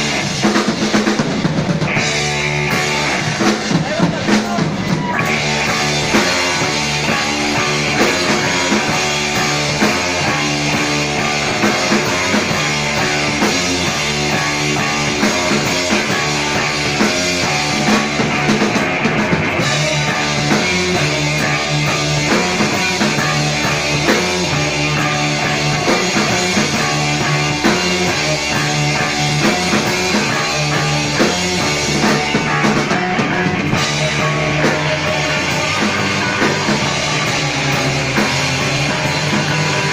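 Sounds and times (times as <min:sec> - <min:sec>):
distorted electric guitar: 0:00.0 - 0:39.9
drum kit beat: 0:00.0 - 0:39.9.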